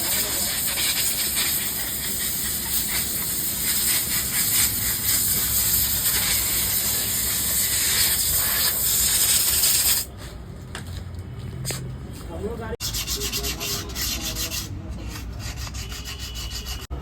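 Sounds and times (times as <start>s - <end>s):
loud steady hissing: 0.0s - 10.1s.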